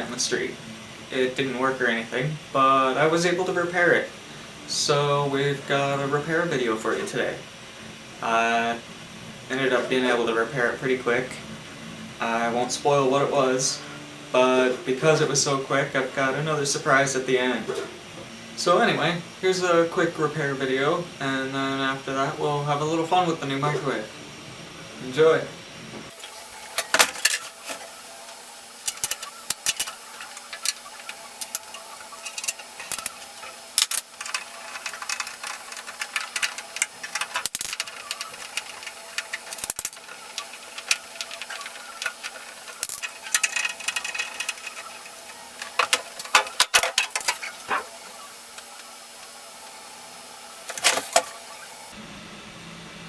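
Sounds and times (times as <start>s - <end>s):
faint steady hum: 0.0s - 53.0s
tools and metal parts clicking: 26.1s - 48.9s, 50.7s - 51.6s.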